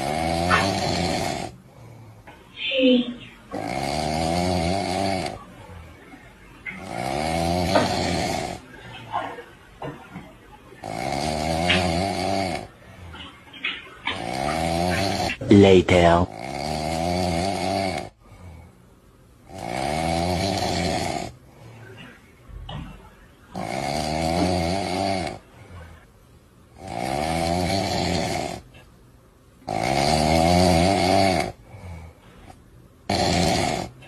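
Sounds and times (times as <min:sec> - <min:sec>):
snoring: 0:00.0 - 0:02.3, 0:03.5 - 0:05.5, 0:06.7 - 0:08.7, 0:10.8 - 0:12.8, 0:14.1 - 0:15.4, 0:16.3 - 0:18.7, 0:19.4 - 0:21.4, 0:23.5 - 0:26.0, 0:26.7 - 0:28.7, 0:29.6 - 0:34.0.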